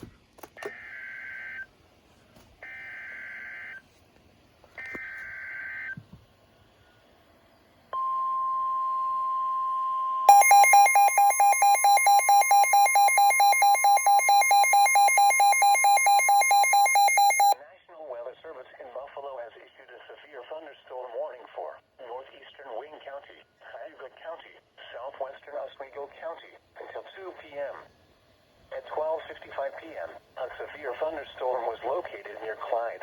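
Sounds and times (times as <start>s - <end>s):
steady warning tone: 7.9s - 17.6s
pulsing electronic alarm beeps: 8.0s - 17.6s.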